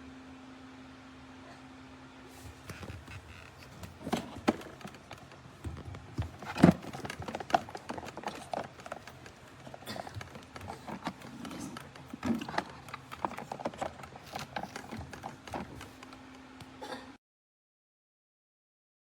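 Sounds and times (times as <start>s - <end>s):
steady low hum: 0.0s - 17.2s
hard parts knocking and clicking: 2.6s - 16.4s.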